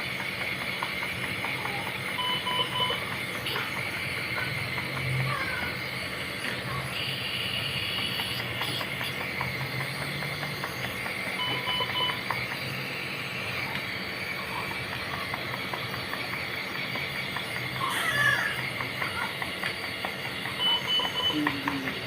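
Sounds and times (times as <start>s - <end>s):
equipment hiss and hum: 0.0s - 22.0s
monitor beeps: 2.2s - 3.0s, 9.9s - 12.6s, 20.5s - 22.0s.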